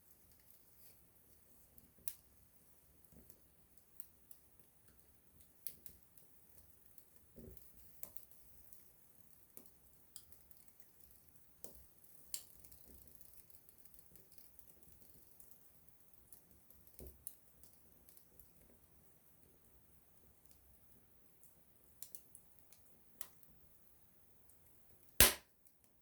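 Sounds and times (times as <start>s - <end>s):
campfire crackling and popping: 25.2s - 25.4s.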